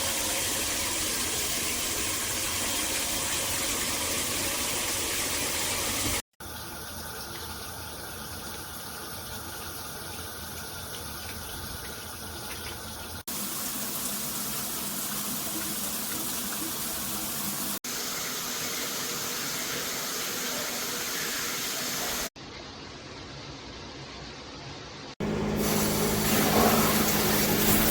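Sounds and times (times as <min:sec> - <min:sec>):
shower water spraying: 0:25.6 - 0:27.9.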